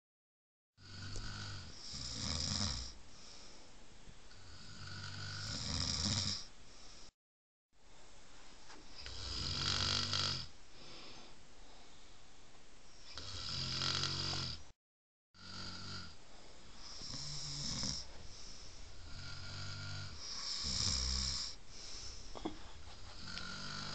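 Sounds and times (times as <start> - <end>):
loud snoring: 0.8 - 3.0, 4.3 - 6.5, 9.0 - 10.5, 13.1 - 14.7, 15.4 - 16.2, 16.8 - 18.1, 19.0 - 21.6, 23.1 - 23.9.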